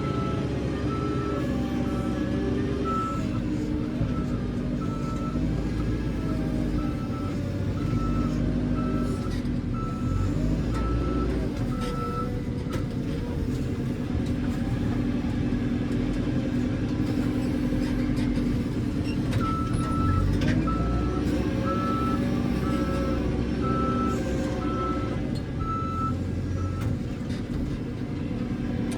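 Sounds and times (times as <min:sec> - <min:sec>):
diesel engine running: 0:00.0 - 0:28.9
reversing alarm beeping: 0:19.4 - 0:26.9.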